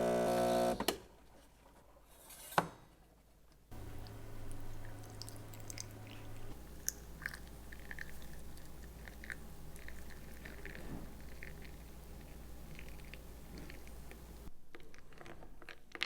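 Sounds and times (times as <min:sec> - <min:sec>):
faint low hum: 0:03.7 - 0:14.6
person chewing food: 0:03.8 - 0:14.3.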